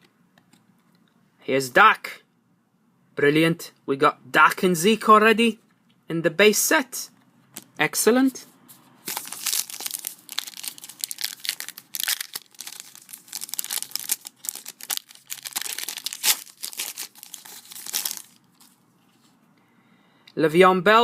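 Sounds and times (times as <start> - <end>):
foil wrapper tearing and crinkling: 9.1 - 18.8.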